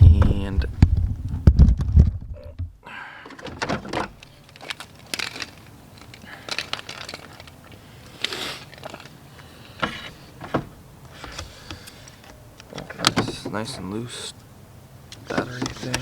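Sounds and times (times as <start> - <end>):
cable rustling: 3.3 - 13.7.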